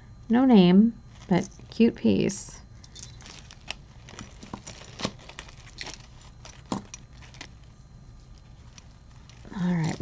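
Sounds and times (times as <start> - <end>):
jewelry clinking: 2.8 - 7.6.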